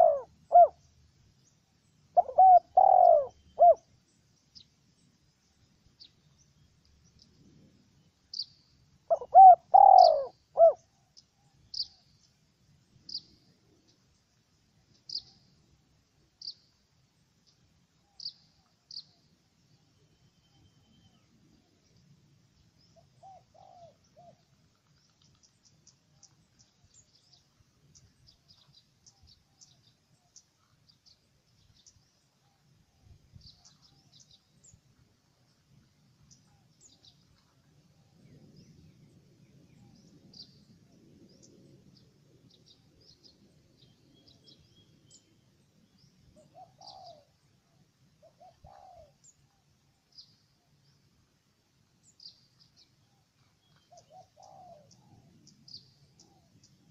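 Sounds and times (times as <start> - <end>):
doves cooing: 0.0 - 0.8, 2.2 - 3.9, 9.1 - 10.9, 23.0 - 24.9, 46.4 - 47.4, 48.2 - 49.2, 53.8 - 55.4
small birds chirping: 0.0 - 56.9.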